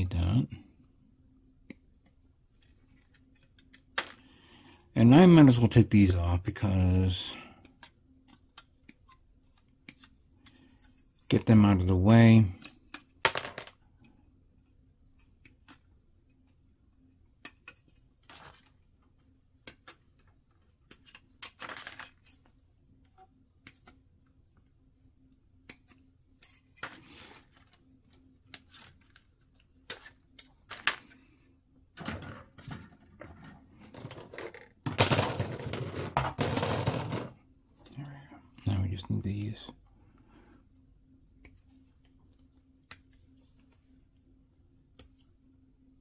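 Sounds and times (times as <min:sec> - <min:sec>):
plastic clattering: 0:32.0 - 0:37.4.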